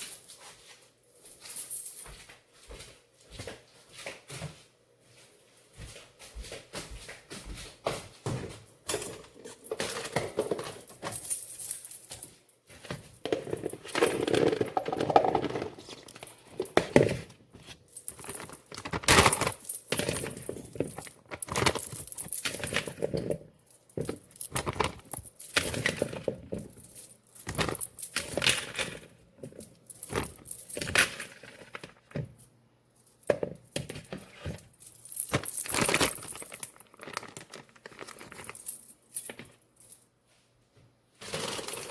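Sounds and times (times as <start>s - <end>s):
utensils clinking and knocking: 12.8s - 17.4s, 33.3s - 39.6s, 41.3s - 41.9s.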